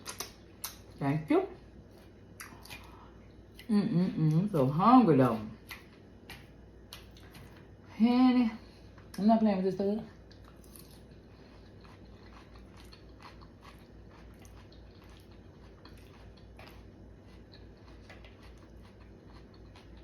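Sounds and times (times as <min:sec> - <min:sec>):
person chewing: 0:00.0 - 0:01.0, 0:01.8 - 0:04.4, 0:05.6 - 0:07.7, 0:10.2 - 0:20.0
low steady hum: 0:00.0 - 0:20.0.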